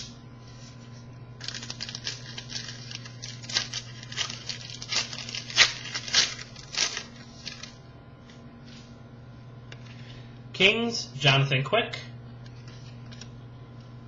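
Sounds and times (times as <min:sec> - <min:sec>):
steady low hum: 0:00.0 - 0:14.0
foil wrappers crinkling: 0:00.5 - 0:07.8.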